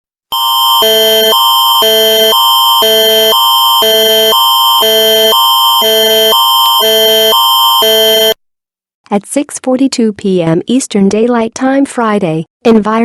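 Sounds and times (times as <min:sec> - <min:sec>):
electronic emergency alert tone: 0:00.3 - 0:08.4.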